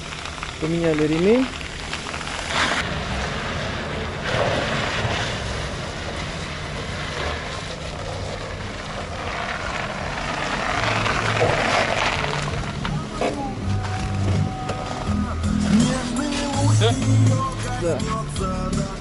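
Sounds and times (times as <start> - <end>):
car engine running: 0.0 - 19.0
rushing noise: 1.5 - 17.8.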